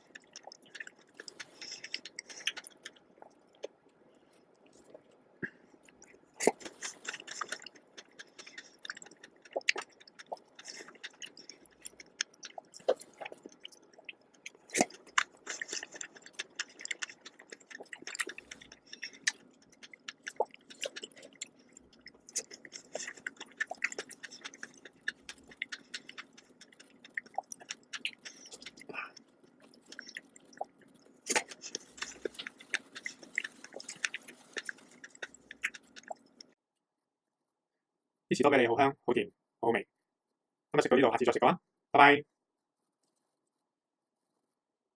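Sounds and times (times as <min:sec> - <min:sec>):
close chewing mouth smacks: 0:00.0 - 0:05.2, 0:05.8 - 0:36.6.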